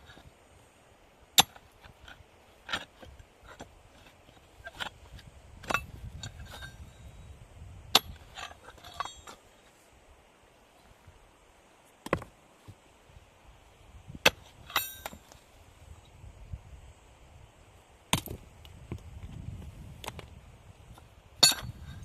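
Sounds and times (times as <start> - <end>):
knocks and clinks of handled objects: 8.0 - 9.4, 14.7 - 15.4.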